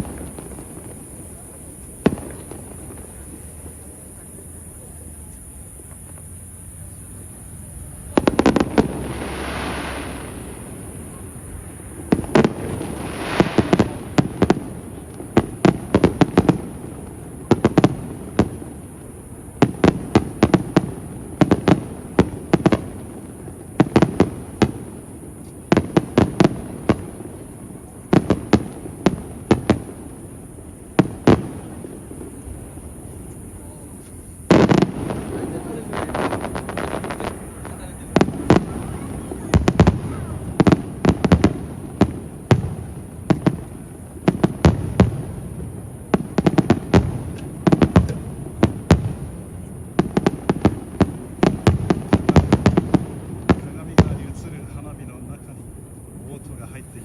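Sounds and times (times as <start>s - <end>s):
hissing firework tail: 0.0s - 57.0s
sharp firework bangs: 0.0s - 57.0s.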